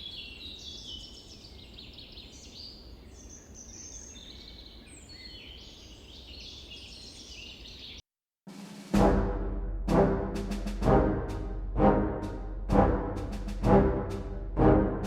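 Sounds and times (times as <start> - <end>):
birds chirping: 0.0 - 8.0
timpani hit: 8.5 - 15.0
orchestral music: 8.8 - 15.0.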